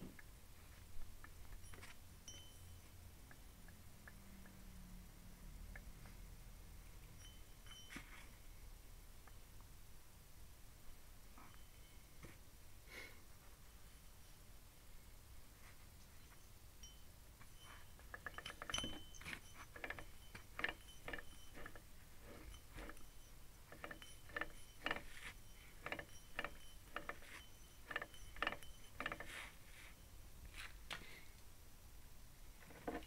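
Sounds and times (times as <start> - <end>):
metallic clicks of differential: 18.0 - 29.3.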